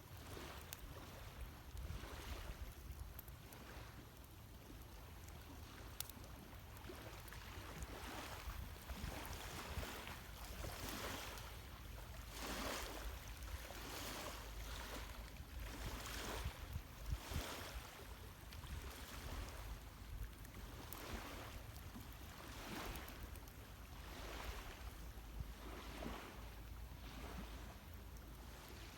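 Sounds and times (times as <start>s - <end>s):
lake waves lapping at shore: 0.1s - 28.9s
low wind rumble on microphone: 15.5s - 17.9s.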